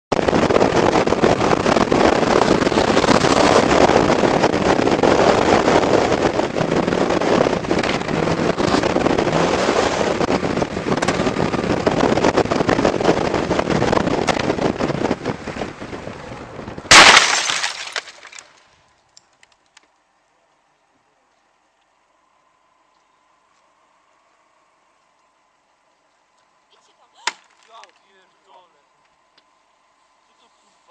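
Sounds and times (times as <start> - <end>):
snowmobile running at speed: 0.1 - 16.9
loud crash: 16.9 - 18.6.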